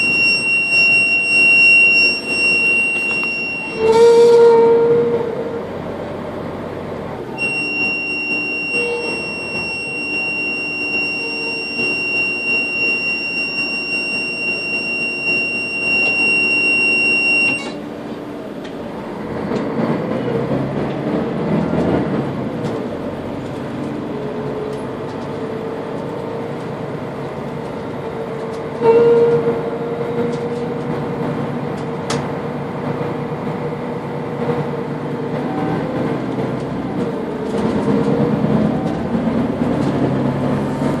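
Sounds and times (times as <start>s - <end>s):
high steady whistle: 0.0s - 5.0s, 7.4s - 17.8s
bus running noise: 0.0s - 41.0s.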